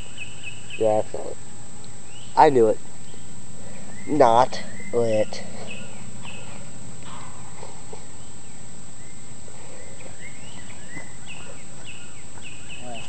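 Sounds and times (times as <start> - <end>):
constant hiss: 0.0 - 13.0
insect trill: 0.0 - 13.0
scattered chirps: 0.0 - 13.0.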